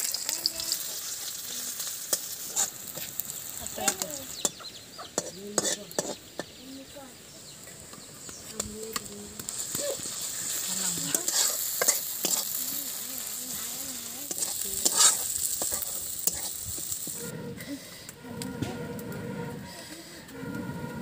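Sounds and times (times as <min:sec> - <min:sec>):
food sizzling in oil: 0:00.0 - 0:17.3
utensil scraping a pan: 0:00.8 - 0:04.4, 0:05.1 - 0:06.2, 0:09.5 - 0:21.0.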